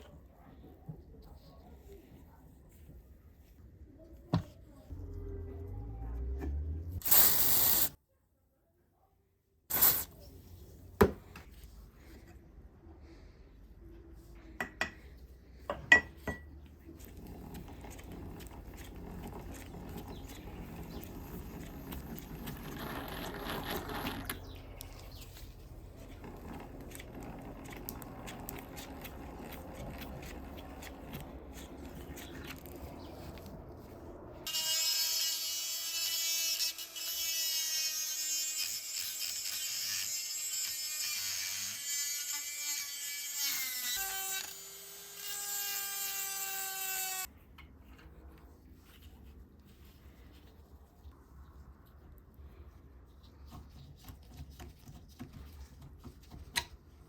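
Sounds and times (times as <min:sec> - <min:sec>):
tool scraping and rubbing: 0:09.7 - 0:10.1, 0:16.9 - 0:47.3.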